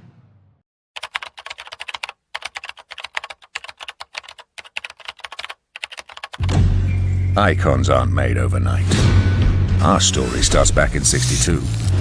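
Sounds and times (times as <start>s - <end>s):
keyboard key clicks: 1.0s - 6.6s.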